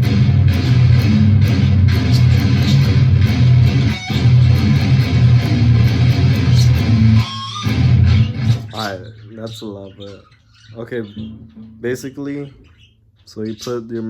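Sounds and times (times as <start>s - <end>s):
electric guitar riff: 0.0s - 8.8s.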